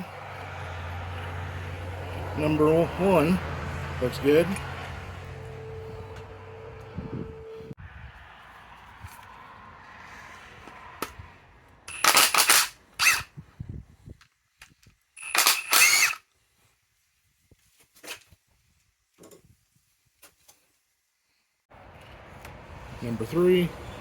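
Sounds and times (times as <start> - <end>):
parts being handled: 11.9 - 13.3, 14.1 - 16.6.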